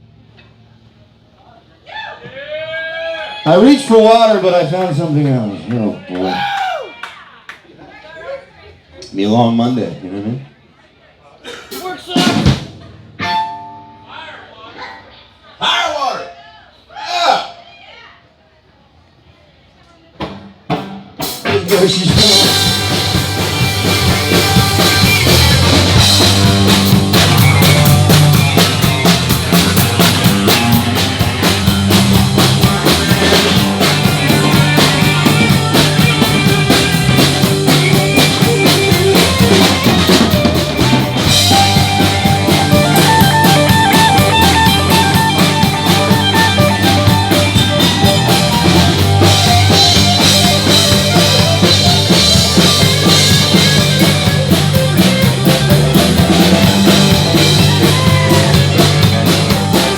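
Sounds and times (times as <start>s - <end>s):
drum kit beat with rimshots: 11.5s - 14.2s, 20.2s - 59.9s
live rock band playing: 11.7s - 14.2s, 20.2s - 59.9s.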